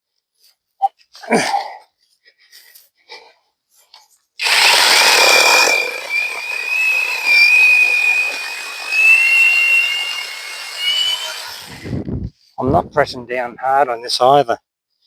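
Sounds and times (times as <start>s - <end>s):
chain rasping through wood: 4.4s - 11.9s
electric motor whine: 4.4s - 12.0s.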